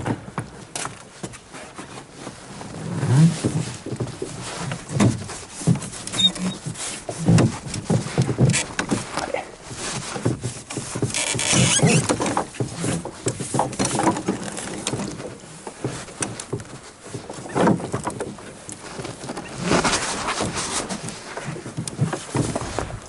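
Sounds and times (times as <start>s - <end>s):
rustling: 1.1s - 23.0s
small clicks and knocks: 10.2s - 22.9s.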